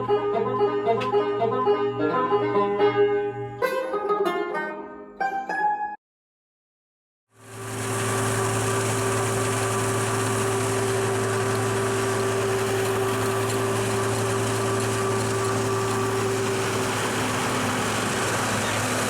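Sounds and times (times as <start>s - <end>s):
engine running steadily: 7.4s - 19.0s.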